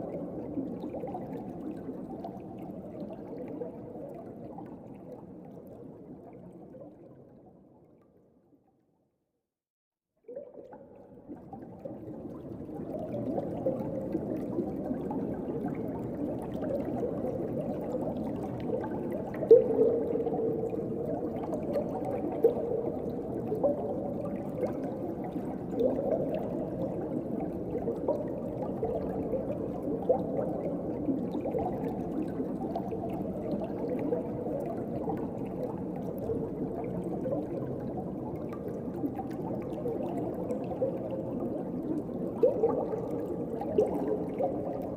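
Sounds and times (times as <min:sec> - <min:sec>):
bubbling and gurgling pops: 0:10.3 - 0:44.9.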